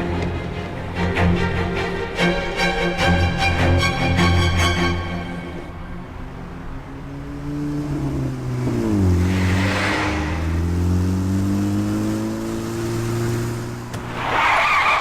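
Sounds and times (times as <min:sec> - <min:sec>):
car engine accelerating: 0:05.5 - 0:15.0
brief rushing noise: 0:08.8 - 0:11.3, 0:14.0 - 0:15.0.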